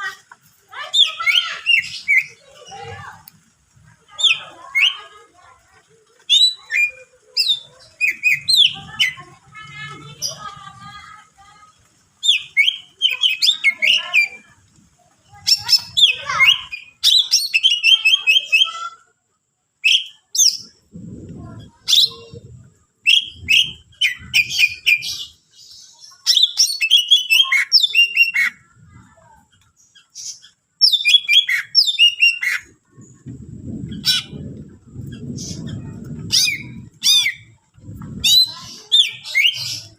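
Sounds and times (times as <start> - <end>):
bird singing with whistled notes: 12.2 - 14.3, 23.1 - 25.4, 30.2 - 32.6.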